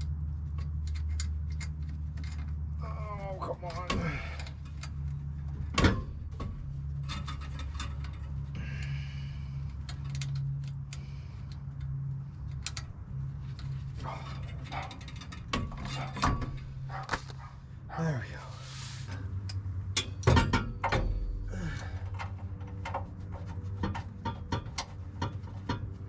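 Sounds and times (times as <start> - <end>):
steady low hum: 0.0 - 26.0
metal clicks of hand tools: 9.6 - 13.0.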